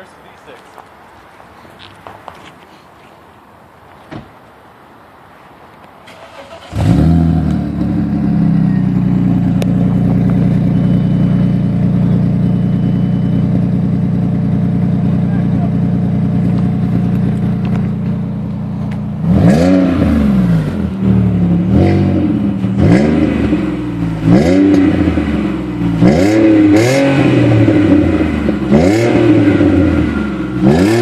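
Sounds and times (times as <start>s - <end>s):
car engine idling: 6.2s - 26.7s
car engine revving: 6.2s - 31.0s.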